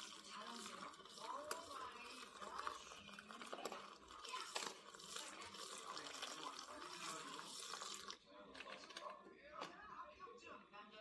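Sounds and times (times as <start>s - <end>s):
liquid pouring: 0.0s - 8.2s.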